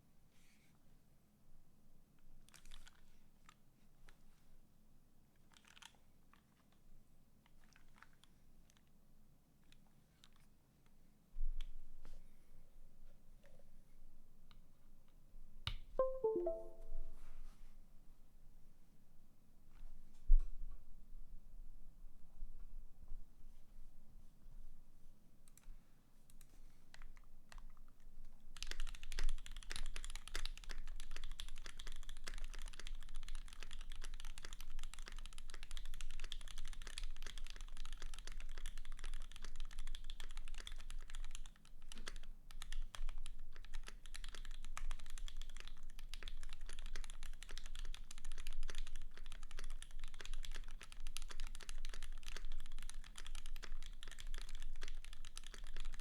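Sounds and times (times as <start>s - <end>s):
fast mechanical keyboard typing: 28.6s - 56.0s.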